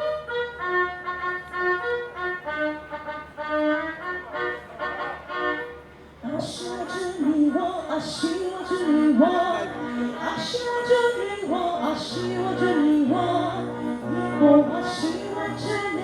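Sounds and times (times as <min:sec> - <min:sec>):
instrumental accompaniment: 0:00.0 - 0:16.0
woman singing: 0:06.2 - 0:16.0.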